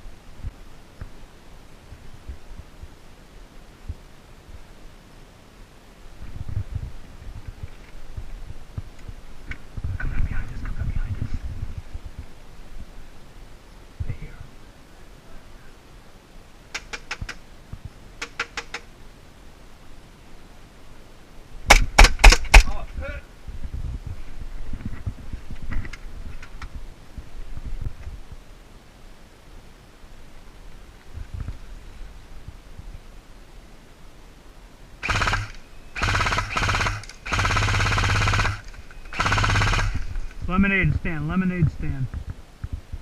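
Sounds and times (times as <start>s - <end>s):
airsoft gun firing bursts: 21.7s - 22.8s, 35.0s - 40.1s.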